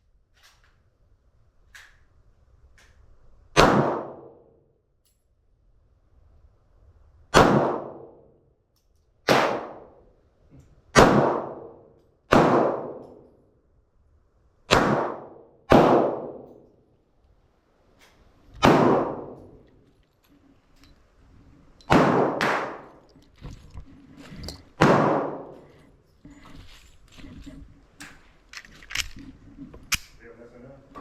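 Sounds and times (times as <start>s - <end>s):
gunshots ringing out: 3.6s - 4.5s, 7.3s - 8.3s, 9.3s - 10.0s, 10.9s - 13.2s, 14.7s - 16.6s, 18.6s - 19.7s, 21.9s - 23.0s, 24.8s - 25.8s.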